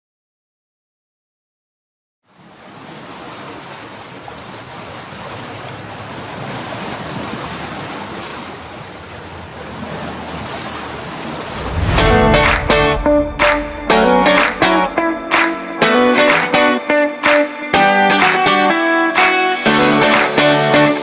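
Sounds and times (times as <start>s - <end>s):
steady rushing noise: 11.3s - 17.4s.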